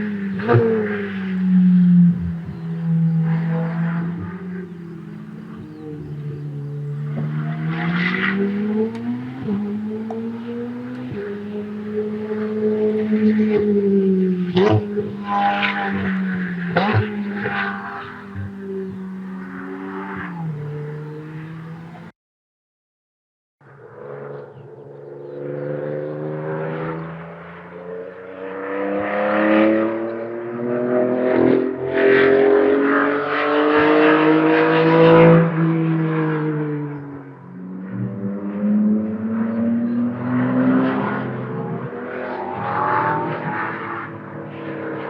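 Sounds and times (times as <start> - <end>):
race car engines accelerating: 0.0 - 22.1, 23.7 - 45.0.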